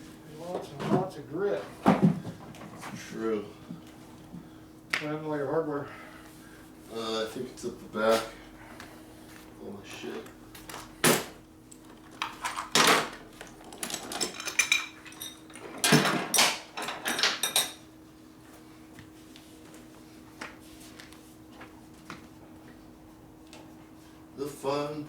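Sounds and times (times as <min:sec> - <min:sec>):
faint steady hum: 0:00.0 - 0:25.0
metal tools clattering and scraping: 0:13.7 - 0:17.8.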